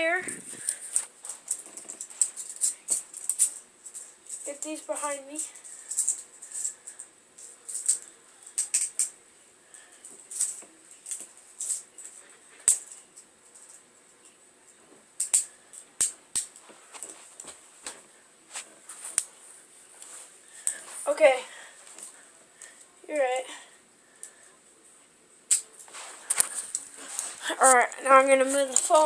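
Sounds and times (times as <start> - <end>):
handcuffs rattling and clicking: 0.6 - 7.1, 7.7 - 9.1, 10.3 - 12.0, 28.4 - 29.0.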